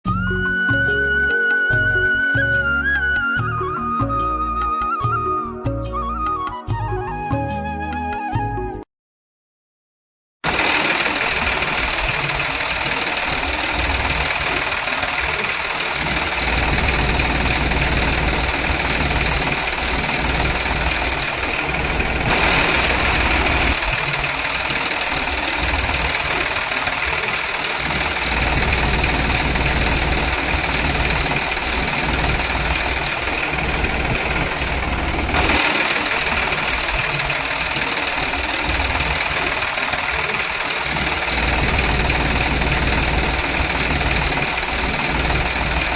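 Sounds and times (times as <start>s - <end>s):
electric motor with gear whine: 10.5s - 45.9s.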